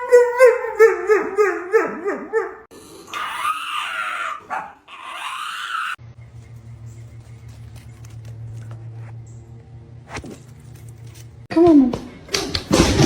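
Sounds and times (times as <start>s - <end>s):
dog howling: 0.0s - 6.0s.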